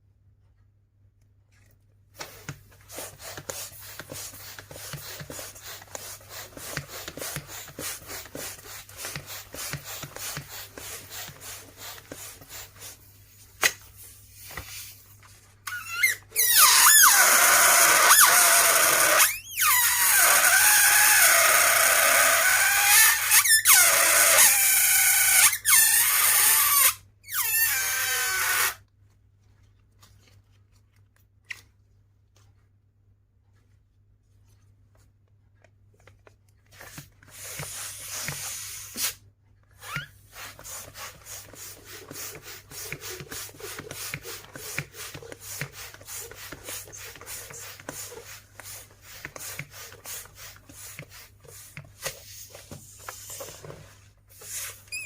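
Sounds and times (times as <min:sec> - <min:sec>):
balloon squealing: 0:15.6 - 0:28.8, 0:37.3 - 0:51.0, 0:54.4 - 0:55.0.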